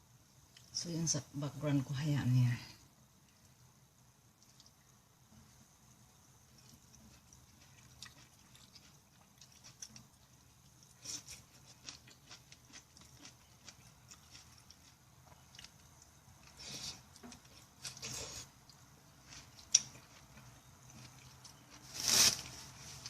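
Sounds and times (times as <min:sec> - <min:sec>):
close-up chewing: 0:05.9 - 0:21.9.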